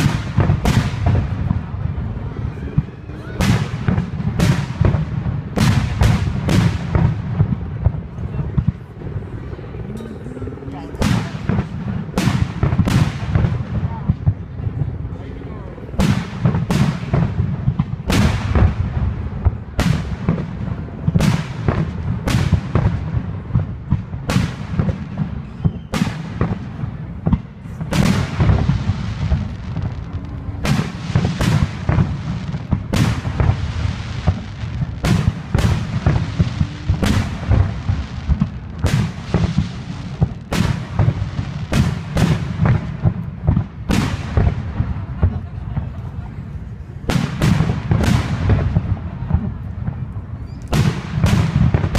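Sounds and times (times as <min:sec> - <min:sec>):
fireworks bursting with echoing rumble: 0:00.0 - 0:51.9.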